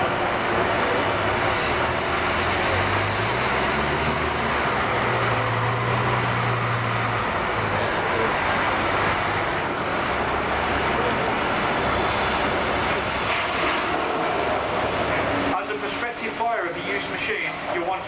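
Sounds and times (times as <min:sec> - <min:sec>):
excavator diesel engine drone: 0:00.0 - 0:18.0
machine noise: 0:08.9 - 0:16.4.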